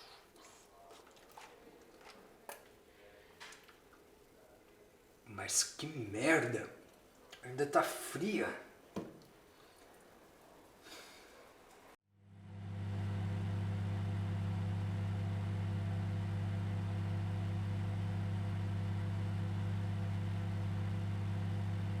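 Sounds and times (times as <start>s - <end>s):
microwave oven humming: 12.3s - 22.0s.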